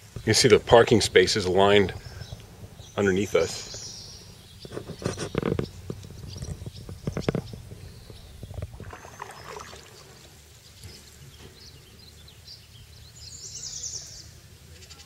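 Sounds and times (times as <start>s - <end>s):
paddle strokes splashing: 7.2s - 10.4s.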